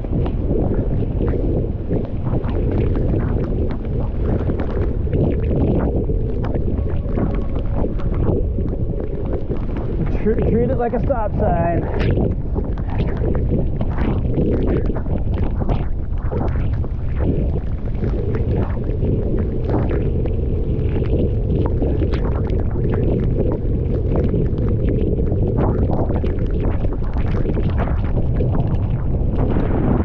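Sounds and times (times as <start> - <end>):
strong wind buffeting microphone: 0.0 - 30.0
sharp clicks and rattles: 6.0 - 18.7.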